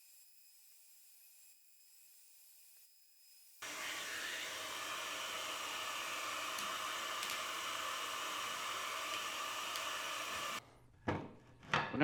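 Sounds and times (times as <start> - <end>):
power tool whirring: 3.6 - 10.6.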